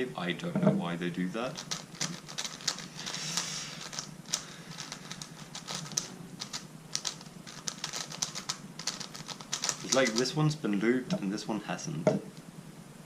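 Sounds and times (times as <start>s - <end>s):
short rubbing hiss: 1.6s - 10.5s
plastic puzzle cube clicking: 3.8s - 10.3s.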